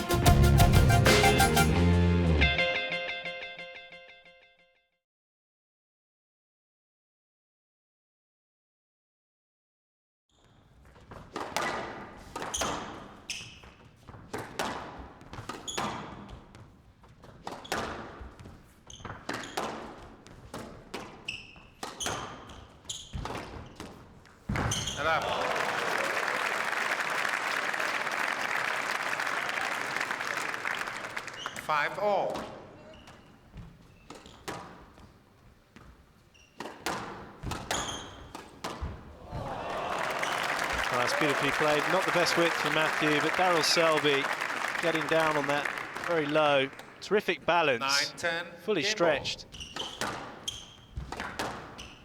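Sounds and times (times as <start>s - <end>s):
shoes squeaking on court floor: 10.3s - 25.2s, 31.2s - 39.5s, 40.2s - 52.0s
squash ball hitting rackets and walls: 10.8s - 25.0s, 32.3s - 39.6s, 49.5s - 52.0s
squash ball knocks: 11.2s - 13.0s, 36.6s - 39.4s, 49.7s - 51.8s.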